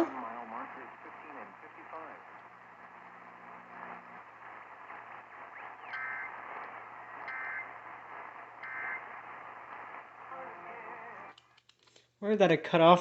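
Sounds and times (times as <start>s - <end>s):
low hum: 0.0s - 11.3s
faint radio hiss: 0.0s - 11.4s
buzzy data-tone bursts: 5.8s - 6.4s, 7.2s - 9.1s.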